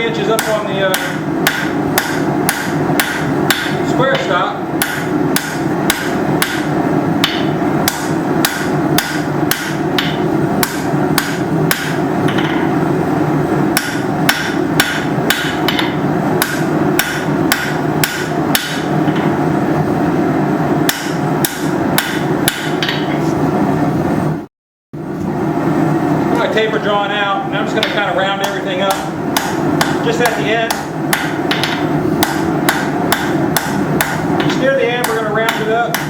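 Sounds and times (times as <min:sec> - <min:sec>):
steady background roar: 0:00.0 - 0:36.0
hammer striking hot steel on anvil: 0:00.3 - 0:12.7, 0:13.7 - 0:19.3, 0:20.8 - 0:23.2, 0:27.8 - 0:36.0.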